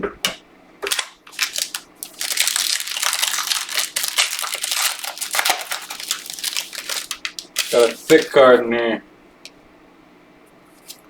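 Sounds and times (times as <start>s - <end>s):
foil wrapper crinkling: 0.9s - 8.6s.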